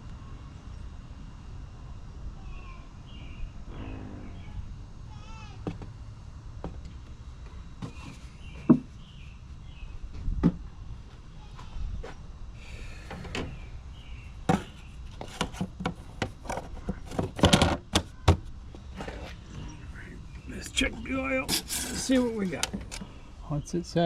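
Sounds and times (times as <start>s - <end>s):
low background rumble: 0.0s - 7.4s
faint bird chirps: 2.4s - 4.7s.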